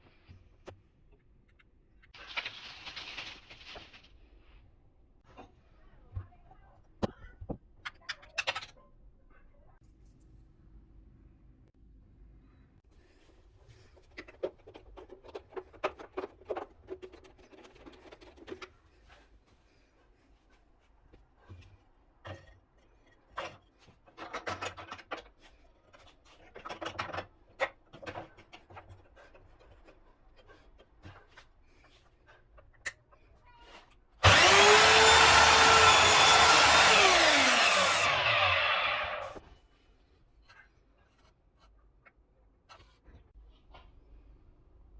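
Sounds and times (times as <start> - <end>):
miter saw motor whining: 34.2 - 39.4.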